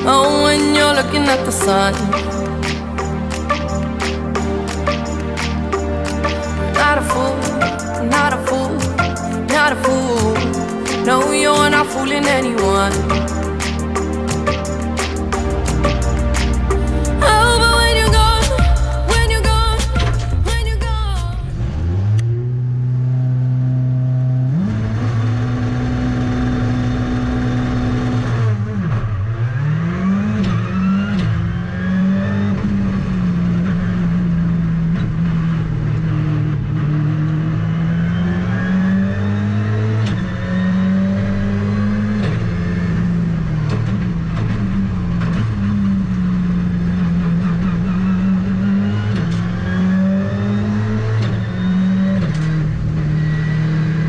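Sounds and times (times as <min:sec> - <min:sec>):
rally car engine revving: 0:20.1 - 0:54.0.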